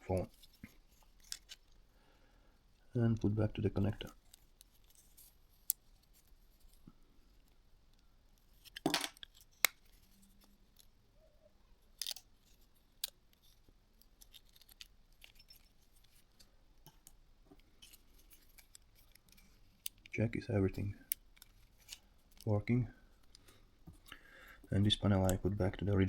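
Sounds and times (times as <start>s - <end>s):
small clicks of phone parts: 1.1s - 1.8s, 7.4s - 10.9s, 11.9s - 20.1s, 21.0s - 22.5s.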